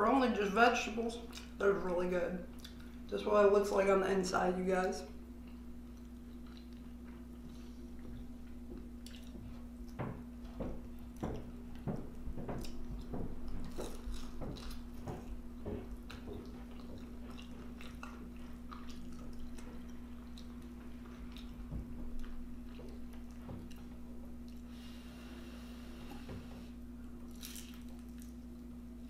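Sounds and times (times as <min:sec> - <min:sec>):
steady low hum: 0:00.0 - 0:29.0
chewing and wet mouth smacking: 0:01.3 - 0:01.6, 0:02.5 - 0:03.1, 0:05.4 - 0:10.0, 0:12.6 - 0:24.7.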